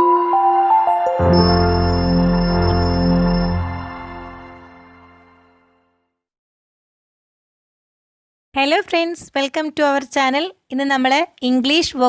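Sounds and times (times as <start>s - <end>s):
music with held chord: 0.0s - 6.1s
deep bass note: 1.2s - 4.6s.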